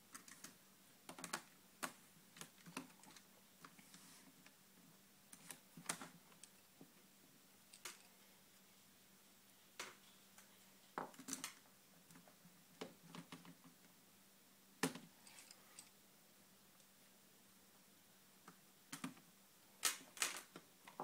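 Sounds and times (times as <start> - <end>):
faint clicks of small tools and plastic: 7.7 - 8.1, 14.8 - 16.0.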